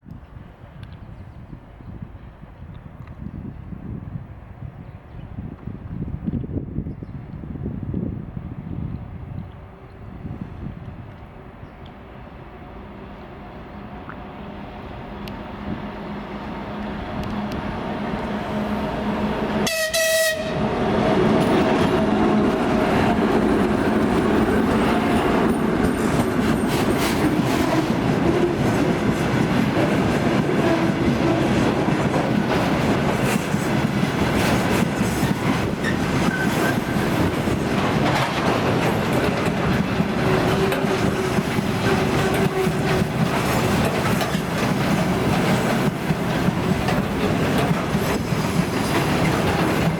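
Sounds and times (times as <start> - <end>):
diesel locomotive drone: 0.1 - 49.9
train horn blast: 18.6 - 20.8
train wheels clicking over rail joints: 21.2 - 49.9.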